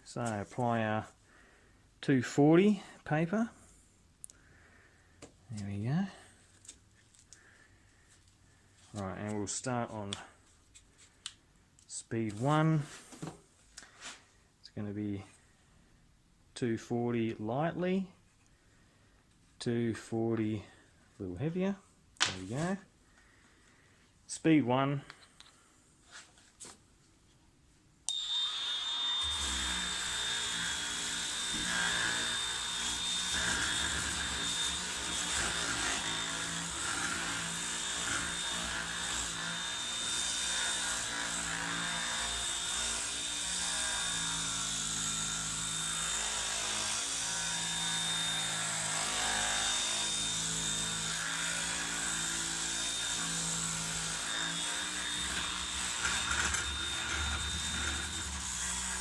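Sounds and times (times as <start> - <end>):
orbital sander whining on wood: 28.1 - 43.4, 49.3 - 59.0.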